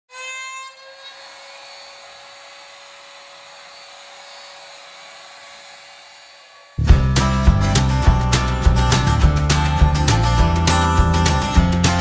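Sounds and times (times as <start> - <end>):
small motor whirring: 0.7 - 6.9.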